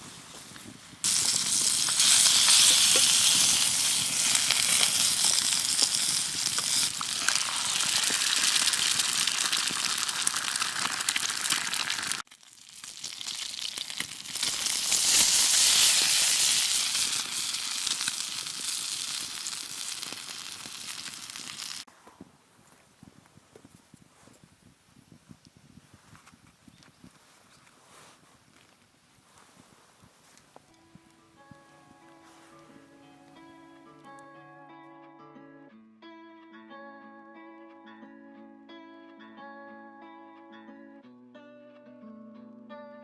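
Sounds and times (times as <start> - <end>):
food sizzling in a frying pan: 1.0 - 21.9.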